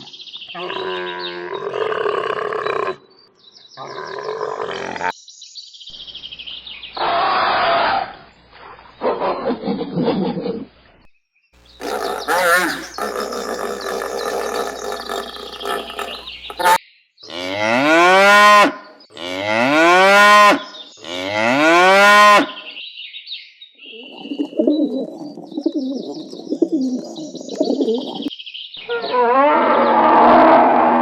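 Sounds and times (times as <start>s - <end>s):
cow mooing: 11.8s - 22.6s.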